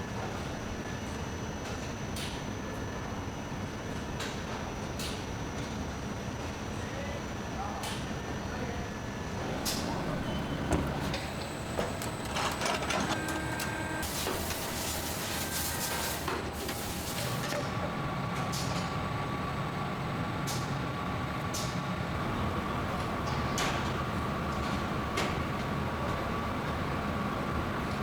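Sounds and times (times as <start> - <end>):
factory machinery hum: 0.0 - 28.0
thin machine whine: 9.1 - 22.8.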